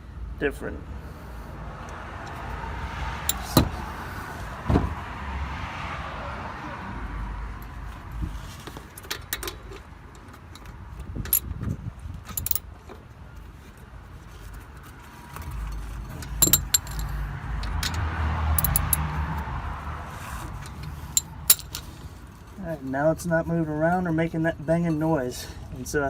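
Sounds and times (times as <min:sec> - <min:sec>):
metal clinks from tools: 0:12.3 - 0:12.6, 0:16.2 - 0:17.2, 0:18.6 - 0:19.0, 0:21.2 - 0:21.9.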